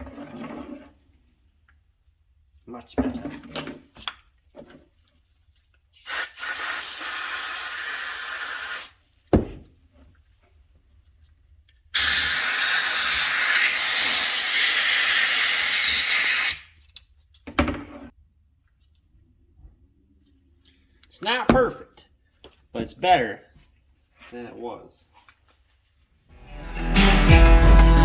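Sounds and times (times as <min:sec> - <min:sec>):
compressed air hissing: 0:12.0 - 0:16.1.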